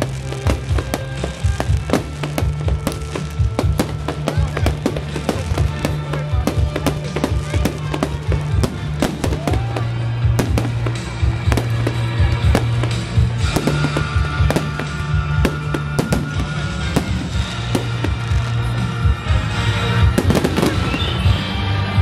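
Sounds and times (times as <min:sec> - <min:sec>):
fireworks bursting: 0:00.0 - 0:21.7
music playing: 0:00.0 - 0:22.0.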